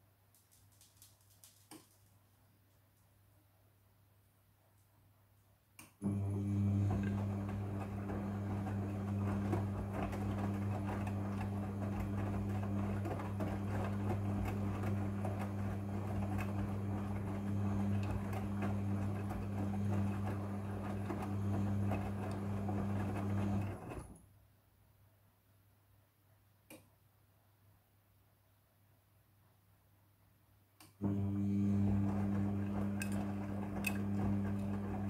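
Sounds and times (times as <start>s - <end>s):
washing machine motor hum: 6.0s - 24.2s, 31.0s - 35.0s.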